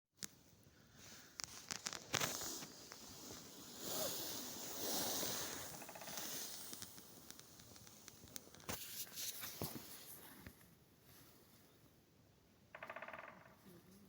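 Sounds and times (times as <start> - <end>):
soft hiss: 0.2 - 12.2
tree creaking: 1.2 - 8.7, 12.7 - 13.7
faint clicks: 5.7 - 8.8.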